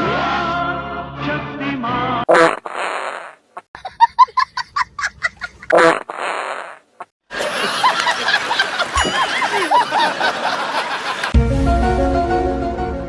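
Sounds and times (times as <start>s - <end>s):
fart sound effects: 2.3s - 3.7s, 5.7s - 7.1s.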